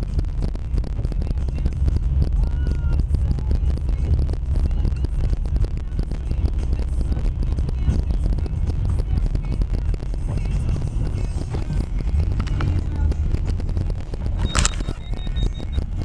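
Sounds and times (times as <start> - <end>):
van engine and tyres rumbling: 0.0 - 16.0.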